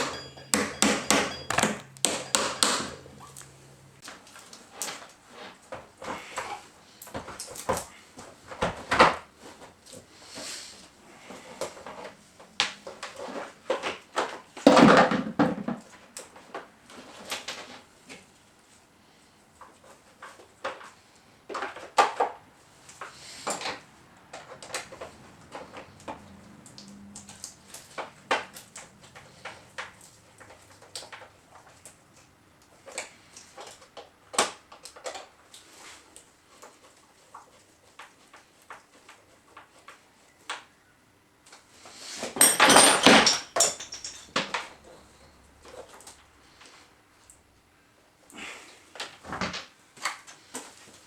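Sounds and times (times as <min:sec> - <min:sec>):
clattering of tools: 0:00.0 - 0:08.0, 0:13.0 - 0:16.6, 0:42.2 - 0:46.2
small metal parts clicking: 0:42.4 - 0:44.7.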